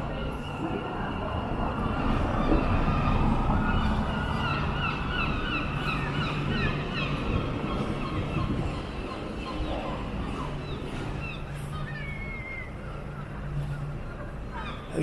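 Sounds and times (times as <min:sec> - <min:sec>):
low rumble of town traffic: 0:00.0 - 0:15.0.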